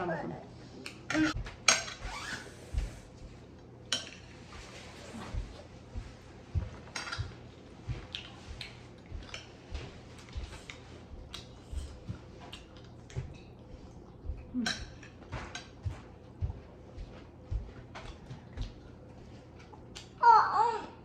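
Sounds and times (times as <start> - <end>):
spoons clinking on plates: 3.9 - 4.3.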